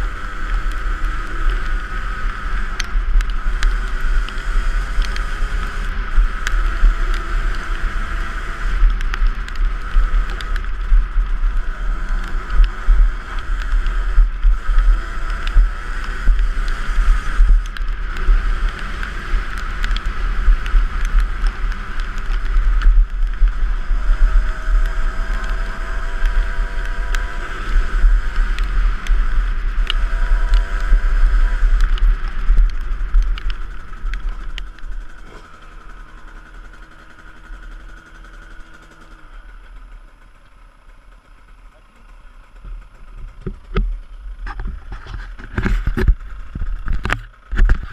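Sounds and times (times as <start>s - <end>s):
dirt bike engine revving: 0.0s - 40.0s.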